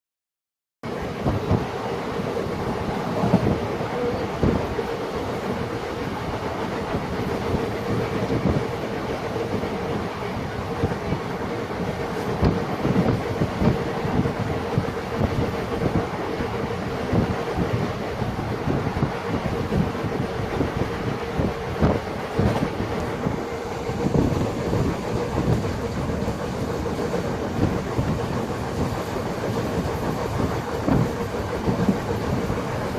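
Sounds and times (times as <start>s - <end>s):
train rumble: 0.8s - 32.9s
steady hum: 22.6s - 32.9s.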